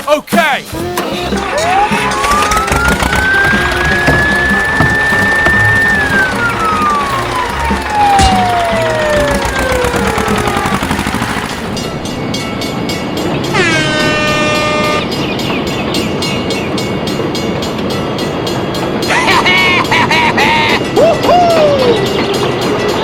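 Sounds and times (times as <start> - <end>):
falling tone: 0.7 - 12.3
train horn blast: 0.8 - 11.2, 13.5 - 15.2
train wheels clickety-clack: 1.0 - 23.0.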